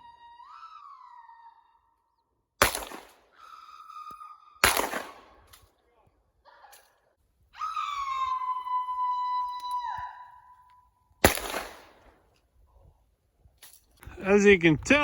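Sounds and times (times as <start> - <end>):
gunshots: 2.6 - 3.2, 4.6 - 5.4, 11.2 - 12.1.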